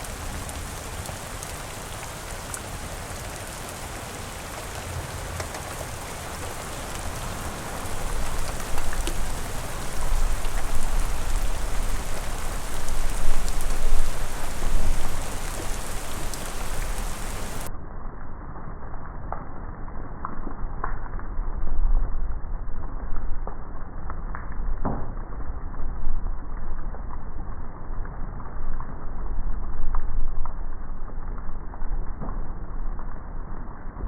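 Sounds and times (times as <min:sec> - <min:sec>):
rain falling: 0:00.0 - 0:17.7, 0:19.1 - 0:34.0
raindrops ticking: 0:00.0 - 0:17.7.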